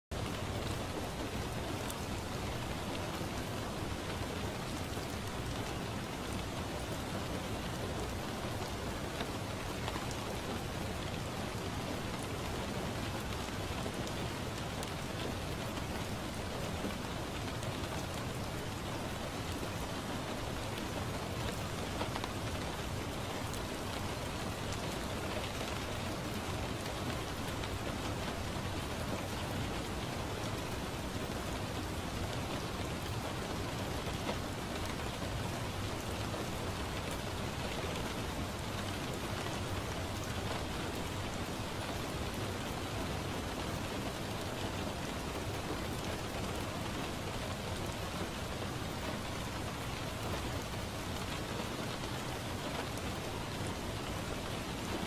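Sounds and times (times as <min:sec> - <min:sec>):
steady rain falling: 0:00.1 - 0:55.0.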